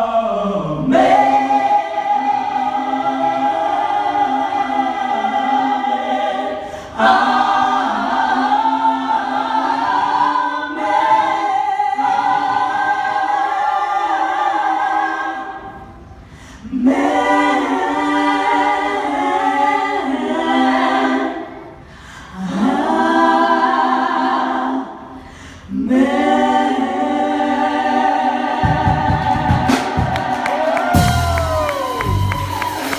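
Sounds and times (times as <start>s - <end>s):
vocal group singing a cappella: 0.0s - 32.9s
cheering with a whoop: 30.4s - 32.9s.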